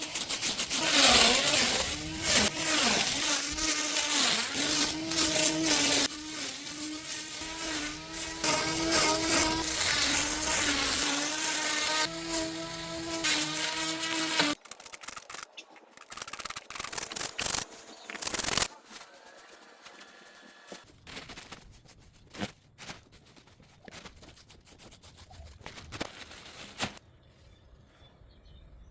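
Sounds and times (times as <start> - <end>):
grass cutting hiss: 0.0 - 14.6
electric grass cutter motor whine: 0.8 - 14.6
scattered clicks: 14.4 - 18.8.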